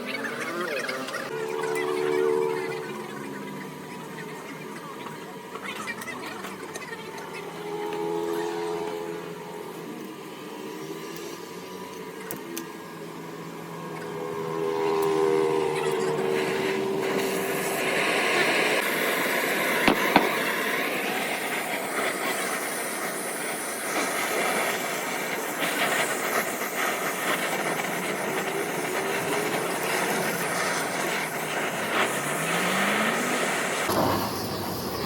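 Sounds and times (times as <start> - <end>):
hissing machine noise: 0.0 - 35.0
short rising whine: 1.0 - 5.6, 28.9 - 35.0.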